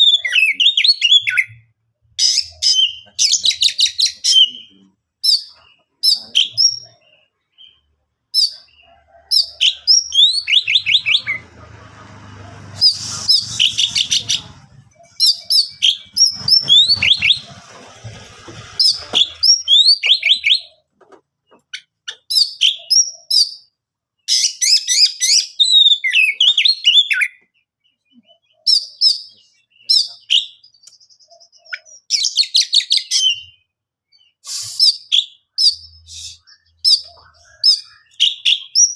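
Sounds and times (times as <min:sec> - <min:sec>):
bird singing chirps and whistles: 0:00.0 - 0:01.6, 0:18.9 - 0:20.7, 0:24.3 - 0:27.4.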